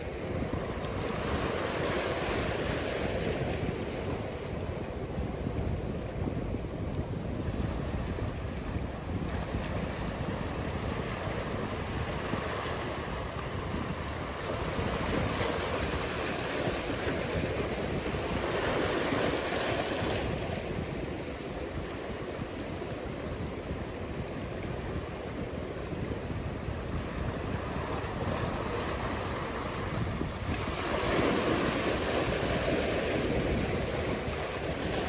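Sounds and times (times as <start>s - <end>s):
wind noise on microphone: 0.0s - 35.0s
ocean surf breaking: 7.4s - 35.0s.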